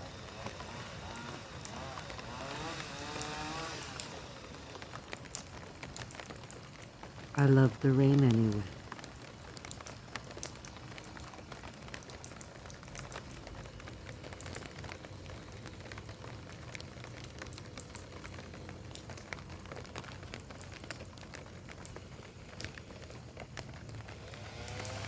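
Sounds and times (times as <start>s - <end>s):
raindrops ticking on surface: 0.0s - 25.0s
steady rain falling: 0.0s - 25.0s.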